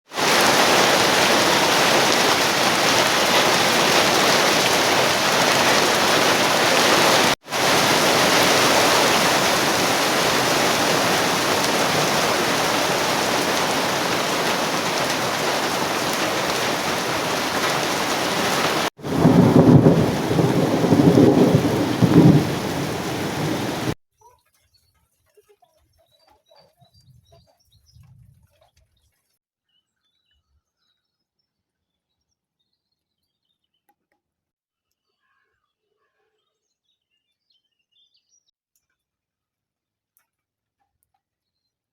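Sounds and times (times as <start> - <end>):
heavy rain: 0.1 - 24.0
thunder rumbling: 0.2 - 24.0.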